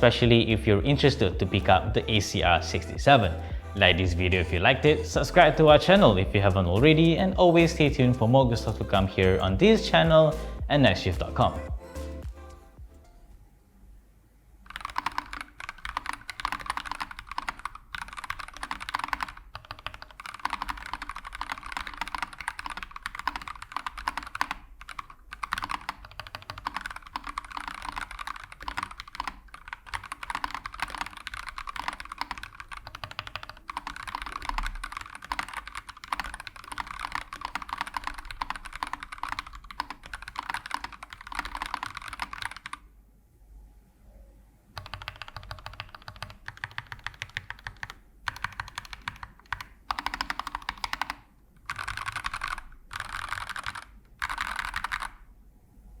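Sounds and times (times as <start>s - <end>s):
mechanical keyboard typing: 14.7s - 42.8s, 44.8s - 55.2s.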